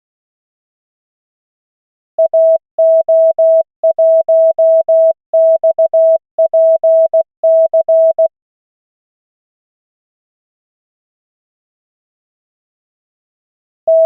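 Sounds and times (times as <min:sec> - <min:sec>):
morse code tone beeping: 0:02.2 - 0:08.3.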